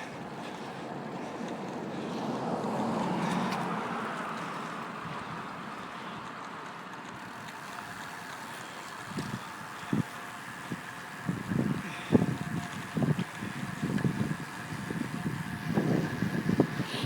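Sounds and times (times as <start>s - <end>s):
car passing: 0.0s - 17.0s
wind noise on microphone: 9.0s - 17.0s.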